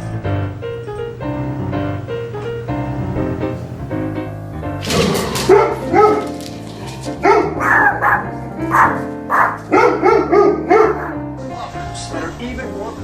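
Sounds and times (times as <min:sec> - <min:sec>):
background music: 0:00.0 - 0:13.0
dog barking: 0:04.9 - 0:06.4, 0:07.2 - 0:11.4.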